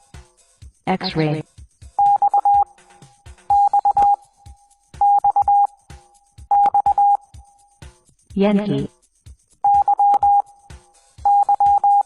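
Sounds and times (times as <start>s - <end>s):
morse code beeps: 2.0s - 2.7s, 3.5s - 4.2s, 5.0s - 5.7s, 6.5s - 7.2s, 9.6s - 10.4s, 11.2s - 12.0s.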